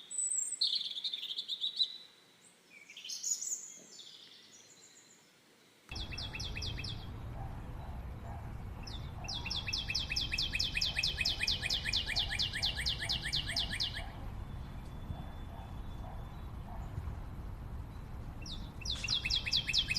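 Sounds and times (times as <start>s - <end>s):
bird singing falling notes: 5.9s - 19.9s
low background rumble: 5.9s - 19.9s.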